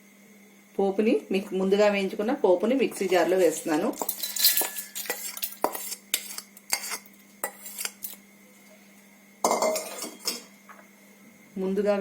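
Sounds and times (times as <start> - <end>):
spoon clinking on metal bowl: 4.0 - 8.2, 9.5 - 10.5.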